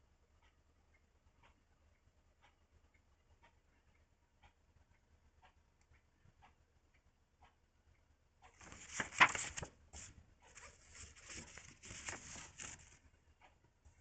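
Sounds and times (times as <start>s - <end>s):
magazine pages rustling: 8.6s - 13.0s
paper crinkle: 8.6s - 13.0s.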